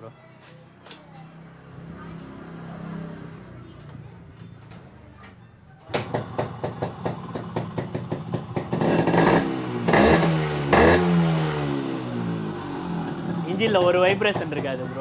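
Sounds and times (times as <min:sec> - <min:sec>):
motorcycle engine starting and revving: 0:05.9 - 0:15.0.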